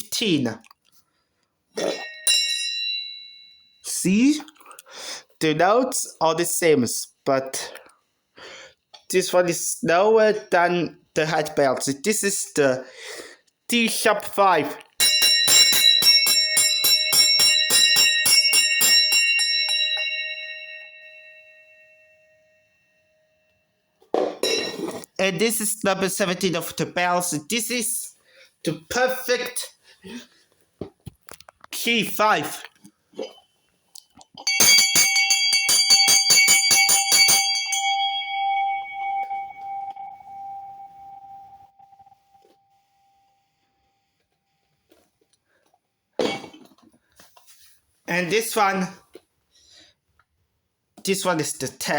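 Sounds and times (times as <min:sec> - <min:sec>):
metal bell ringing rapidly: 0:01.8 - 0:03.9, 0:15.0 - 0:22.0, 0:34.4 - 0:41.5
shaken bell ringing: 0:34.4 - 0:42.2.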